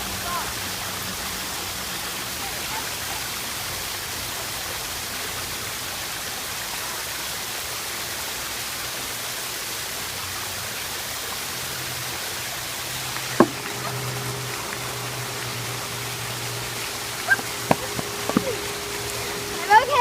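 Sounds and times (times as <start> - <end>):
running water rushing: 0.0 - 20.0.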